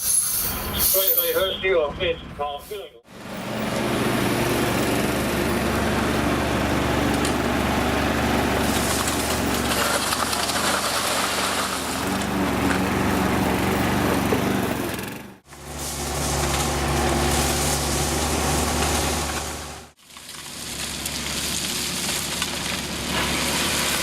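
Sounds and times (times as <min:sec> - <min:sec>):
locomotive engine running: 0:03.1 - 0:20.0.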